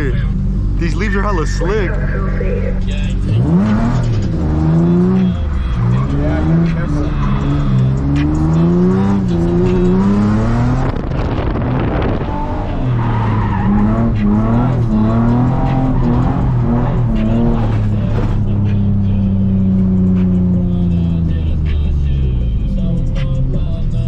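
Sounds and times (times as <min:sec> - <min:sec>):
car engine revving hard: 0:03.2 - 0:18.5.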